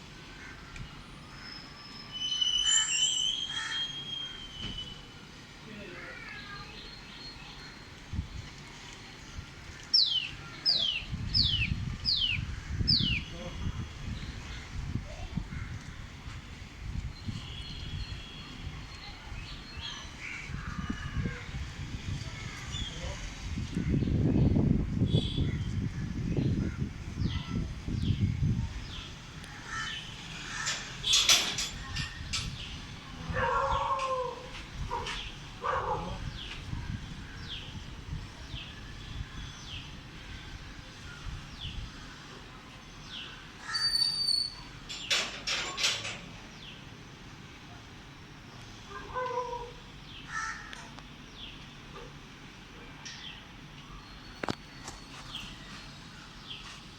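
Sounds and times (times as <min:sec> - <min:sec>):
bird whistling downward notes: 0:01.4 - 0:05.0
small birds chirping: 0:09.8 - 0:13.5.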